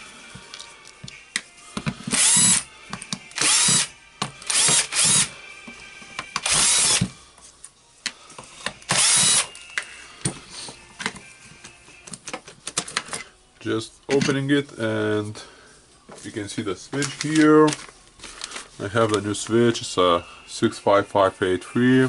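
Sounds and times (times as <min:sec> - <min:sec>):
electric screwdriver spinning: 0:02.1 - 0:02.7, 0:03.3 - 0:05.3, 0:06.4 - 0:07.1, 0:08.9 - 0:09.5.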